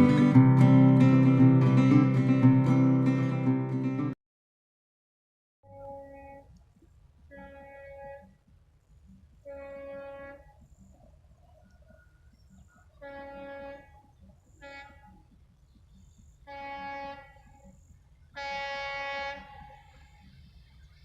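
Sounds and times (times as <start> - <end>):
locomotive horn blasts: 7.3 - 8.3, 9.4 - 10.6, 13.0 - 15.2, 16.5 - 17.8, 18.4 - 20.2.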